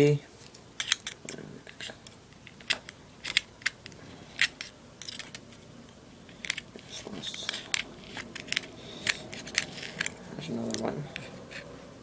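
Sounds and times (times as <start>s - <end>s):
scratchy rustle: 6.8s - 11.9s.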